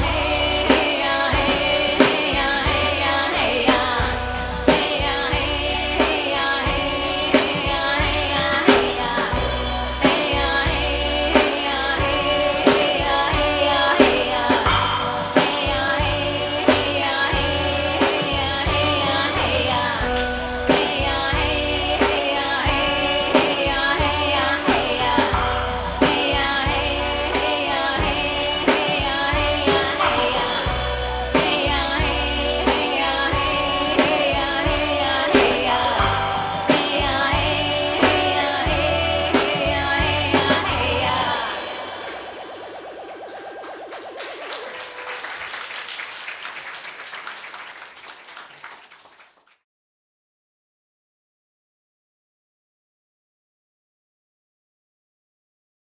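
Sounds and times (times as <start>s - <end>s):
steady drum beat: 0.0s - 44.2s
person singing: 0.0s - 45.2s.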